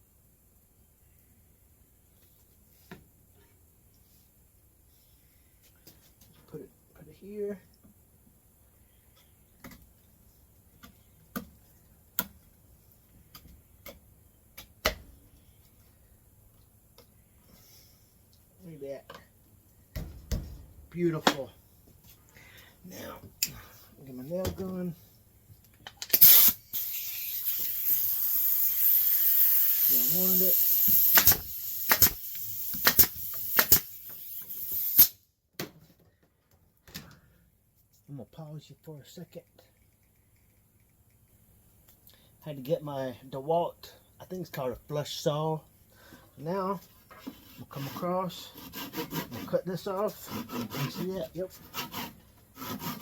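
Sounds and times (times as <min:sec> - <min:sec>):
nail gun firing: 0:30.7 - 0:34.0.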